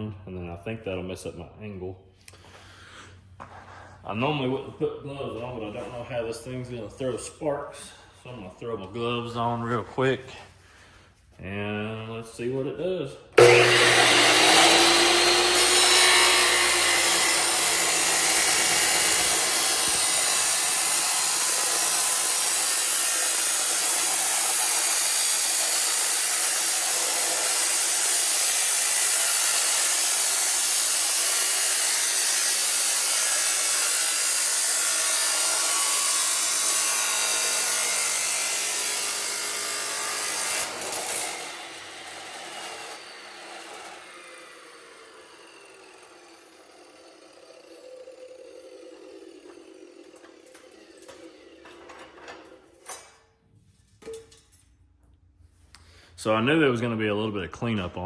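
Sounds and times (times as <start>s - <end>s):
saw motor winding down: 13.4s - 51.9s
chop saw grinding through steel pipe: 13.4s - 53.1s.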